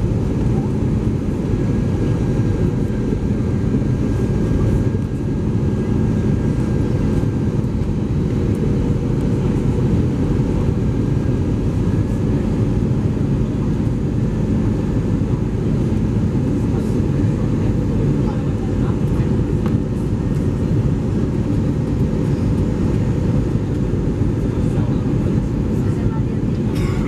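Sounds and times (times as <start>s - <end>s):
airplane cabin rumble: 0.0s - 27.0s.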